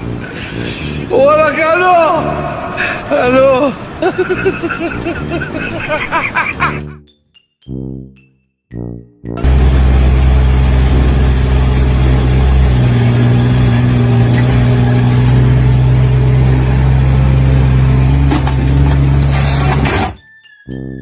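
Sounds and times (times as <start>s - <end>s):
engine running loudly: 9.4s - 20.2s.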